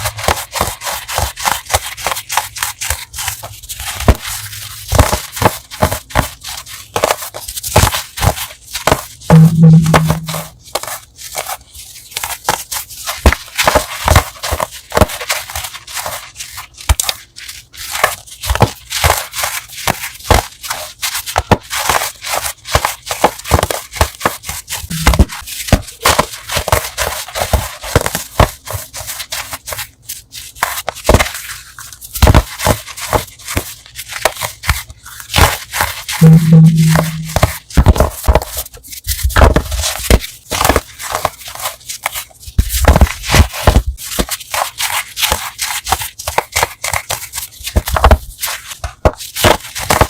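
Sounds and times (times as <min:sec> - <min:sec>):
chalk crunching: 0:00.0 - 0:50.0.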